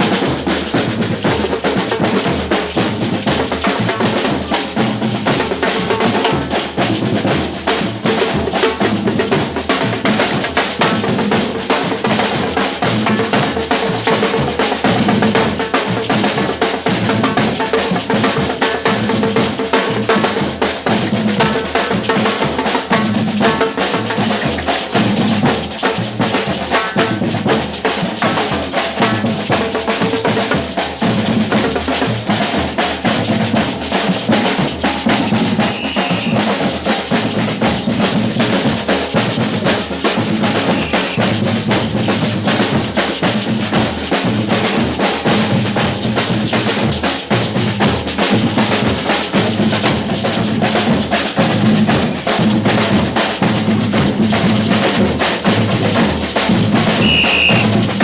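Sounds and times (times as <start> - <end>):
samba percussion ensemble: 0.0 - 58.0
snare drum strokes: 21.7 - 32.0, 33.1 - 43.3, 55.3 - 58.0.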